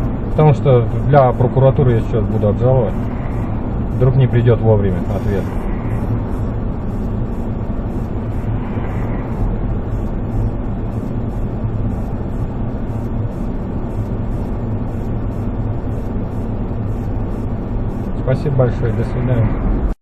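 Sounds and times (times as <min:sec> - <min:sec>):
car engine and road noise: 0:00.0 - 0:20.0.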